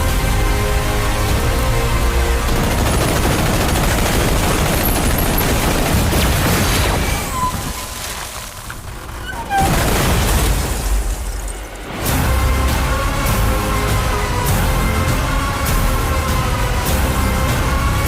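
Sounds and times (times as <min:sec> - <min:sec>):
rapid dense blasts: 0:02.3 - 0:07.3, 0:08.8 - 0:13.7
rumbling score: 0:08.8 - 0:18.0.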